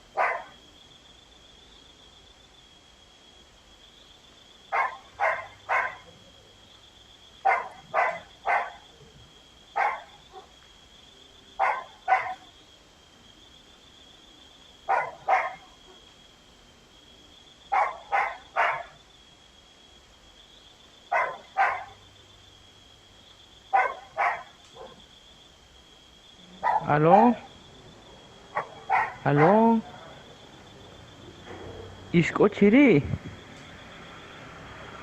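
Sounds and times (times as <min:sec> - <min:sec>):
dog barking: 0:00.1 - 0:00.6, 0:04.7 - 0:06.3, 0:07.4 - 0:09.0, 0:09.7 - 0:10.6, 0:11.6 - 0:12.5, 0:14.8 - 0:16.0, 0:17.7 - 0:19.0, 0:21.1 - 0:22.0, 0:23.7 - 0:25.0, 0:26.5 - 0:27.5, 0:28.5 - 0:30.2.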